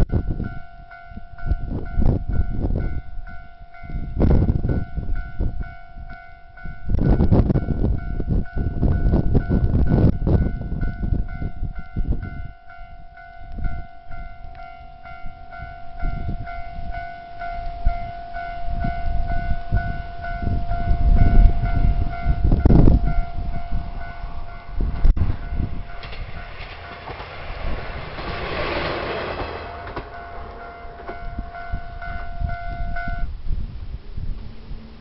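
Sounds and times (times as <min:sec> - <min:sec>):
level-crossing warning bell: 0:00.0 - 0:33.4
train wheels clattering: 0:25.0 - 0:32.7.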